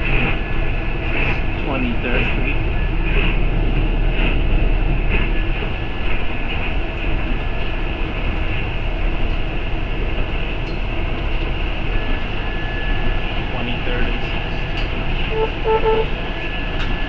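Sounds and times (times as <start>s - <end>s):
bus engine and road rumble: 0.0s - 17.0s.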